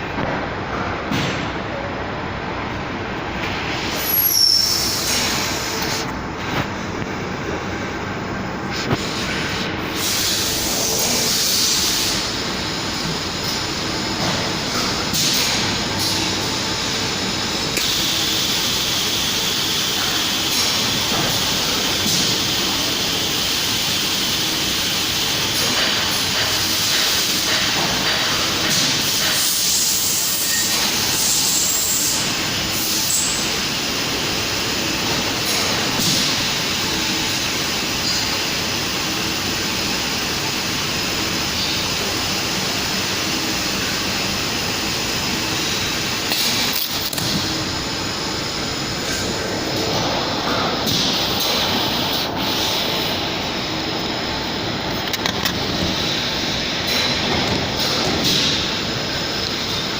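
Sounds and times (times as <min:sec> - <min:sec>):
fabric welding machine running: 0:03.3 - 0:59.9.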